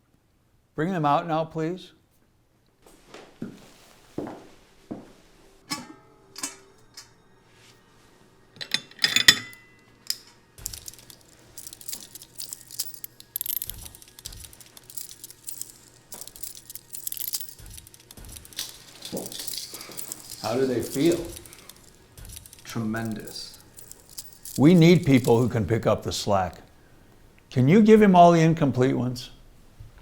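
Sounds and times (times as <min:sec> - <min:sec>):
sharp clinks and knocks: 0:08.6 - 0:25.5
crackling rustling handling noise: 0:10.0 - 0:27.5.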